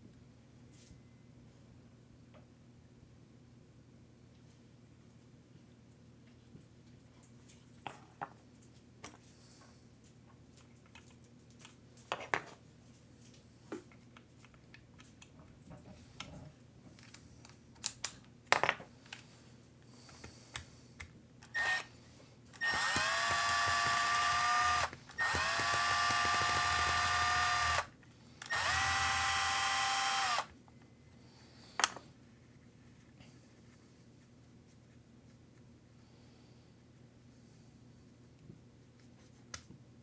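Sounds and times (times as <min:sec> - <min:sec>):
cordless electric screwdriver running: 0:21.5 - 0:21.9, 0:22.6 - 0:27.9, 0:28.5 - 0:30.5.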